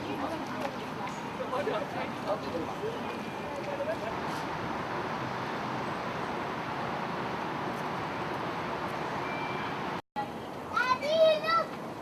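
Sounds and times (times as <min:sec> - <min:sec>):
distant traffic hiss: 0:00.0 - 0:12.0
faint thin tone: 0:09.2 - 0:09.8.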